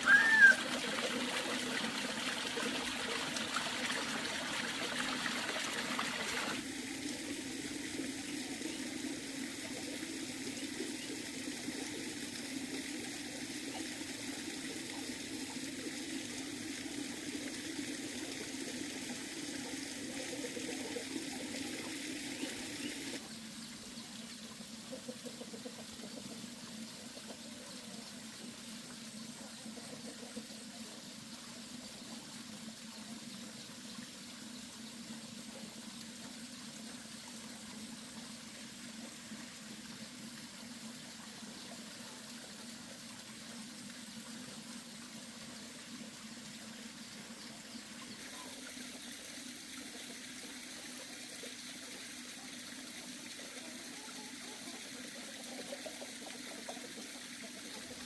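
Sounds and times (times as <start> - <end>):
water running: 0.0 - 23.2.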